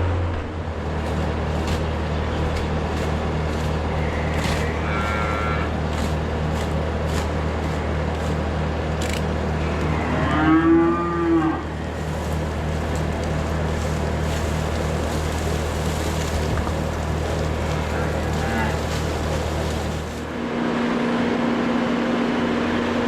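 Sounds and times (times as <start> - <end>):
engine droning: 0.0 - 23.0
cow mooing: 3.7 - 6.1, 9.6 - 12.0, 17.5 - 19.3.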